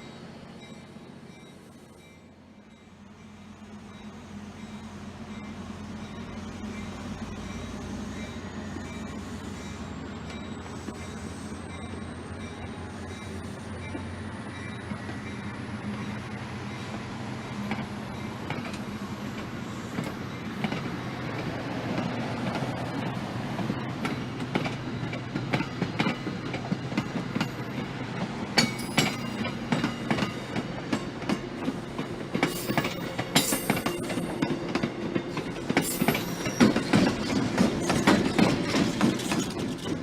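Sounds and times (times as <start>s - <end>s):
train rumbling on rails: 0.0s - 40.0s
wheels clicking over rail joints: 17.6s - 40.0s
wheel squeals: 35.3s - 40.0s.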